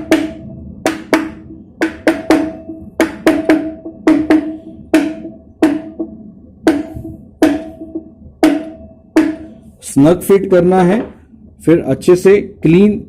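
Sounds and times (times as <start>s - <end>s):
mallet knocking with ringing tone: 0.0s - 9.7s.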